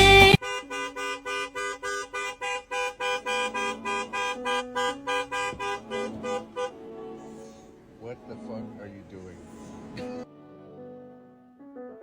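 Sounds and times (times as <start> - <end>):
horn short blasts: 0.0 - 7.6.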